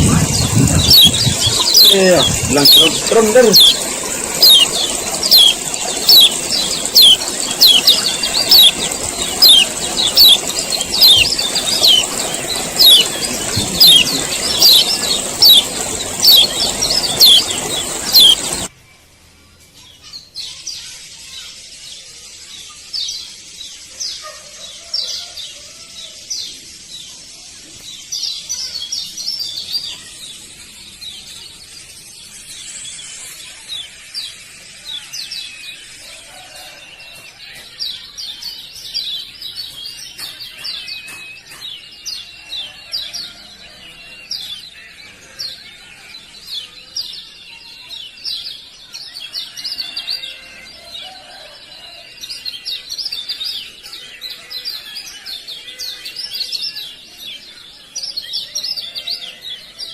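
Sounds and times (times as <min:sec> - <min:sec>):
bird calling high notes: 0:00.0 - 0:18.7
soft bird chirps: 0:00.0 - 0:18.7
steady high hiss: 0:00.0 - 0:18.7.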